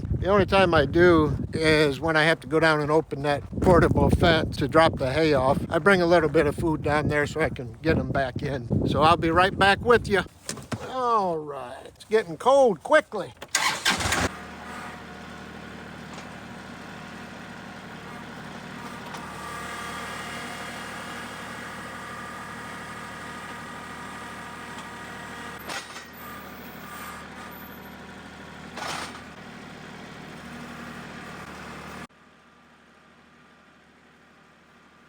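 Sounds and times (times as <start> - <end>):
engine running: 11.5 - 35.0.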